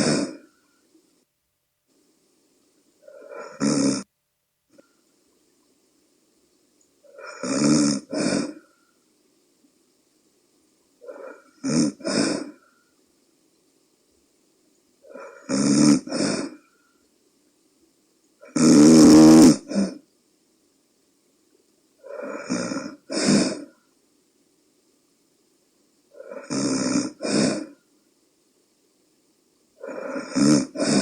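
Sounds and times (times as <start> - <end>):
woman snoring: 0.0 - 0.6, 3.0 - 4.1, 7.1 - 8.7, 11.0 - 12.7, 15.1 - 16.6, 18.4 - 20.0, 22.0 - 23.8, 26.2 - 27.8, 29.8 - 31.0.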